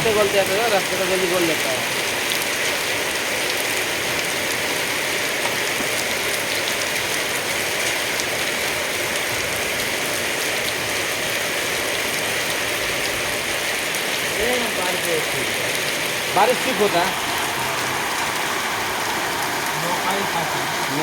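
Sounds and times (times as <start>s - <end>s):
hailstones ticking: 0.0s - 8.7s
heavy rain hissing: 0.0s - 21.0s.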